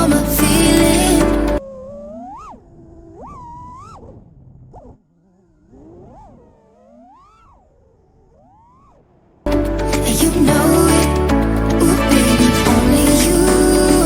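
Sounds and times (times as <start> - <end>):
background music: 0.0 - 1.6, 9.5 - 14.0
drone motors whining: 0.0 - 9.4.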